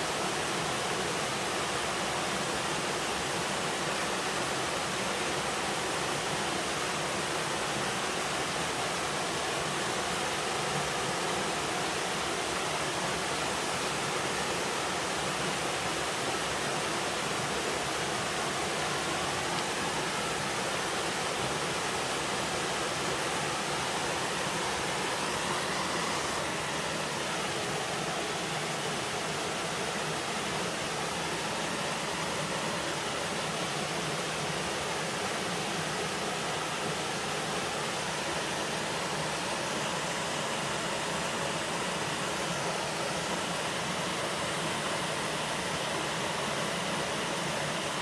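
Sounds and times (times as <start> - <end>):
waterfall rushing: 0.0 - 48.0.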